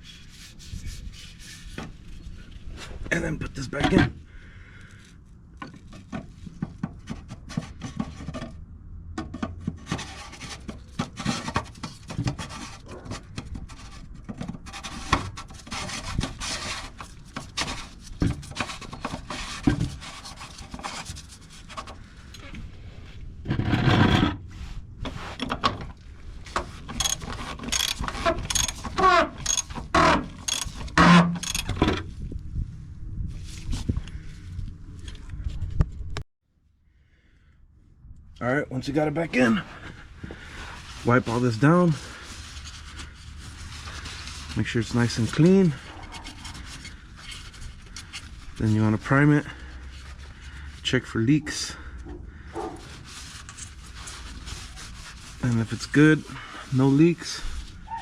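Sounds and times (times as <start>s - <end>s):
plastic part rubbing and scraping: 0.0s - 3.0s, 9.6s - 22.0s, 23.4s - 25.6s, 26.4s - 32.2s
short squeaks: 27.0s - 31.7s.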